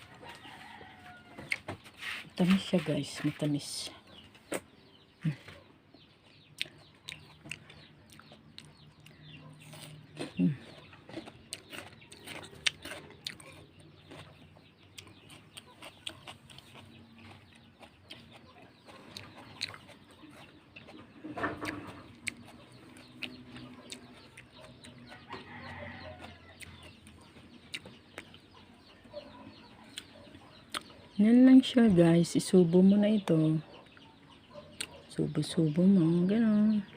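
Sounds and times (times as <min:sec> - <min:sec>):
wet chewing and mouth clicks: 0:01.4 - 0:01.7, 0:05.9 - 0:31.2, 0:33.7 - 0:35.2.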